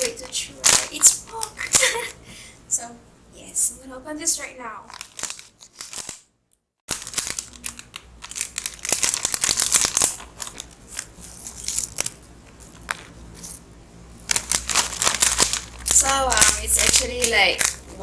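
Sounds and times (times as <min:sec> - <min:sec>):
plastic chip bag crinkling: 0:00.0 - 0:02.1, 0:04.8 - 0:06.2, 0:06.9 - 0:13.6, 0:14.2 - 0:18.0.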